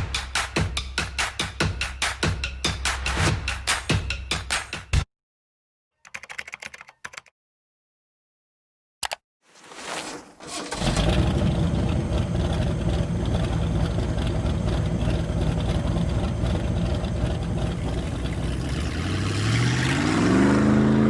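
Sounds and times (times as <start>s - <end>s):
engine starting and idling: 10.4s - 21.0s.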